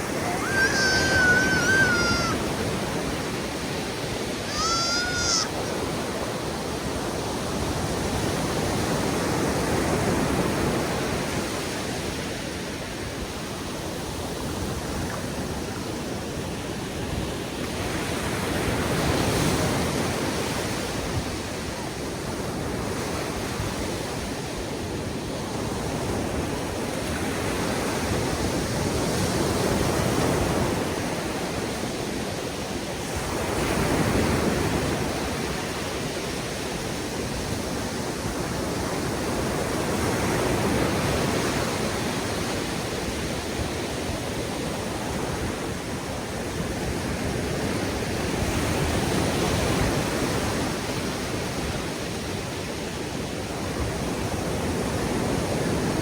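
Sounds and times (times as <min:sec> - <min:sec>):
waves breaking on a beach: 0:00.0 - 0:56.0.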